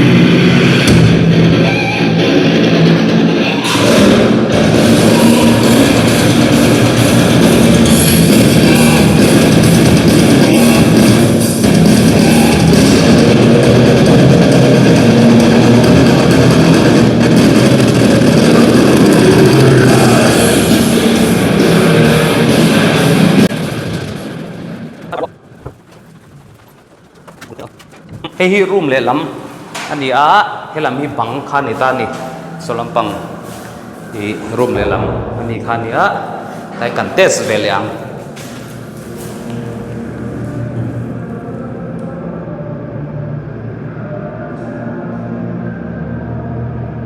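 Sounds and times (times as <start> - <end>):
loud rock music over speaker: 0.0 - 23.5.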